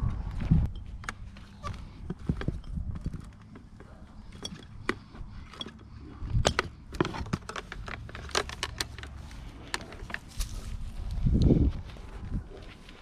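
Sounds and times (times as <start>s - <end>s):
sharp clicks and knocks: 2.0s - 10.3s.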